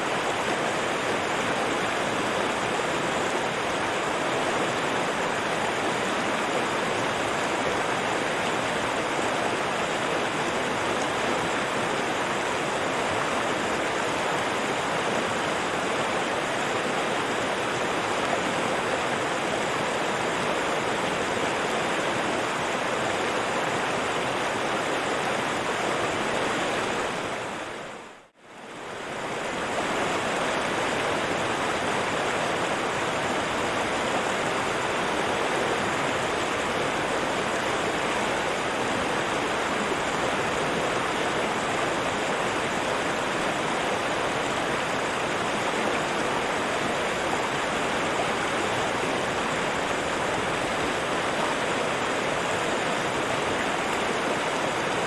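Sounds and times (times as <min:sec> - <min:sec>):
river water flowing: 0:00.0 - 0:55.0.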